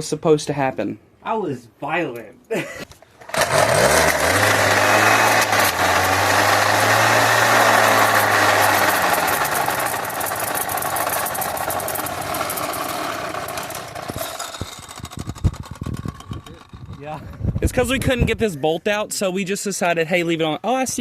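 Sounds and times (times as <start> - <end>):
small two-stroke engine running: 3.2 - 17.4.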